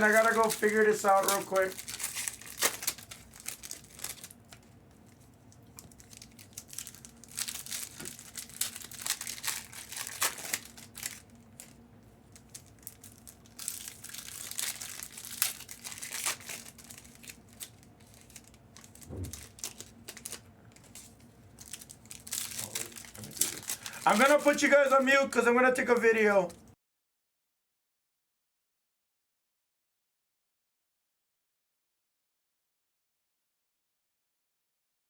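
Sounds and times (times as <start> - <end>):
rustling and crinkling: 0.0 - 26.6
low thump: 19.1 - 19.4.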